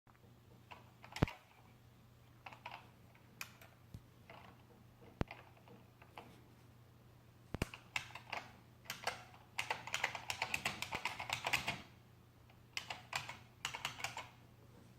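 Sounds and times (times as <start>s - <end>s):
faint low hum: 0.1s - 14.9s
keyboard key presses: 0.7s - 1.4s, 7.5s - 11.9s, 12.8s - 14.4s.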